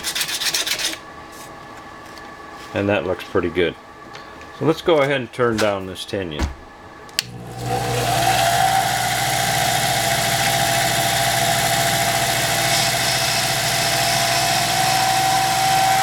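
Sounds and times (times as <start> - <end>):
lathe switch click: 7.1 - 7.4
lathe motor whining: 7.2 - 16.0.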